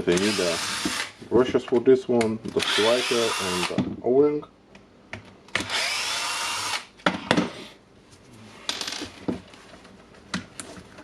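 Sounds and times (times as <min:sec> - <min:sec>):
rotary hammer drill running: 0:05.7 - 0:06.8.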